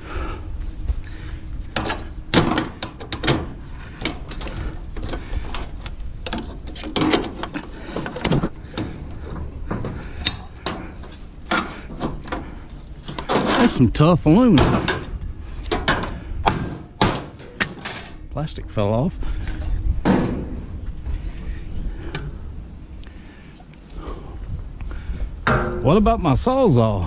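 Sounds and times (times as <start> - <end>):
metal knocks clanks and rattles: 1.7 - 18.2, 19.5 - 20.8, 25.4 - 26.2.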